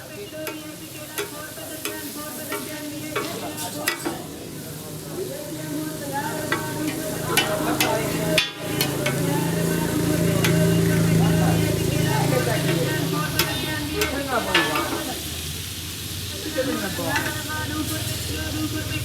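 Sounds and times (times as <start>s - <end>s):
meat sizzling in a pan: 0.0s - 19.0s
metal spatula scraping a pan: 6.2s - 15.4s.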